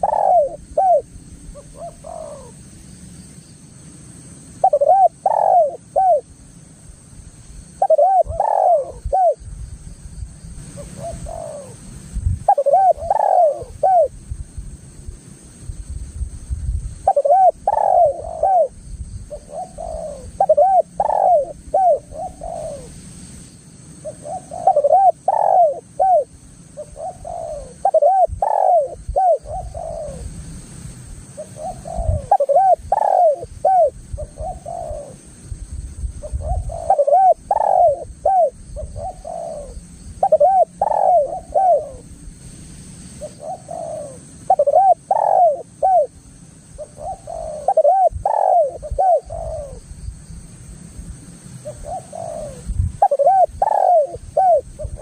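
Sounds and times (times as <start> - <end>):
dove cooing: 0.0 - 2.6, 4.6 - 6.3, 7.8 - 9.4, 10.6 - 14.2, 17.0 - 23.0, 24.0 - 30.4, 31.4 - 35.2, 36.2 - 42.1, 43.2 - 49.9, 51.6 - 55.0.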